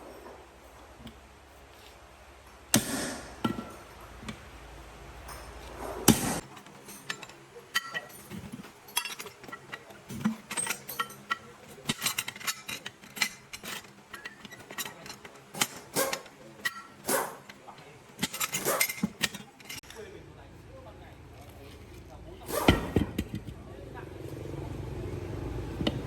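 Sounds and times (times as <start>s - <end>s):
metal tools knocking and clinking: 3.4s - 4.4s, 6.4s - 20.1s, 22.7s - 23.6s.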